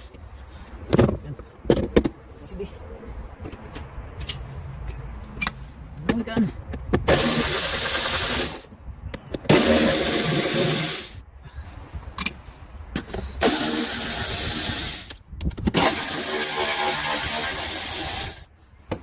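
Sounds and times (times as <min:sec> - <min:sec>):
air power tool running: 0:07.1 - 0:08.6, 0:09.5 - 0:11.2, 0:13.4 - 0:15.1, 0:15.8 - 0:18.5.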